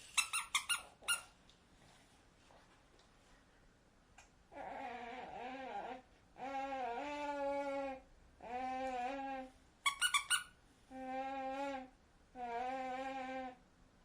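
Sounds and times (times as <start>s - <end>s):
squeaky toy squeaking: 0.0s - 1.3s, 9.8s - 10.6s.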